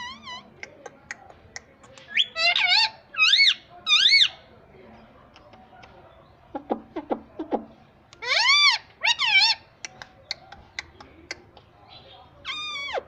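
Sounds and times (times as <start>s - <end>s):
parrot loud drawn-out calls: 2.2s - 4.3s, 8.2s - 9.7s
parrot chirps: 12.4s - 13.0s.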